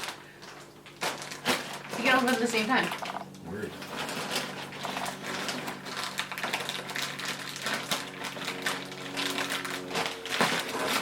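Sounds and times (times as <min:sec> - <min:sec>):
plastic packaging crinkling and tearing: 0:01.0 - 0:01.9, 0:05.9 - 0:11.0.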